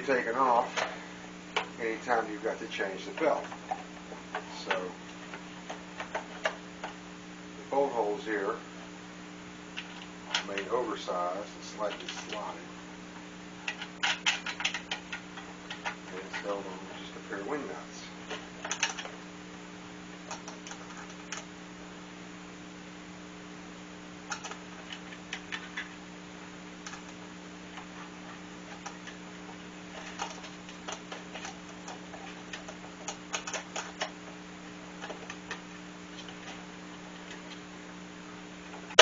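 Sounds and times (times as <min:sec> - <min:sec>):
steady low hum: 0:00.0 - 0:39.0
small parts clicking and tapping: 0:13.6 - 0:16.6, 0:18.3 - 0:19.2, 0:20.3 - 0:21.5, 0:24.3 - 0:25.9, 0:26.8 - 0:27.9, 0:29.9 - 0:34.2.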